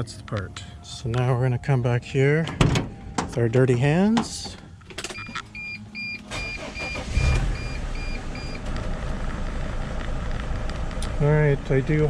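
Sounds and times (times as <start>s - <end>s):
diesel engine cranking and running: 2.4s - 12.0s
dashboard warning chime beeping: 5.1s - 8.7s.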